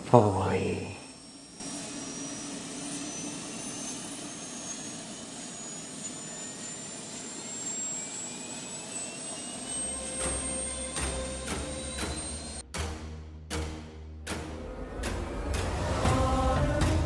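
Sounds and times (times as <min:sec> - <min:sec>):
aircraft engine noise: 0:00.0 - 0:12.6
high whine rising in pitch: 0:00.0 - 0:12.6, 0:14.5 - 0:17.0.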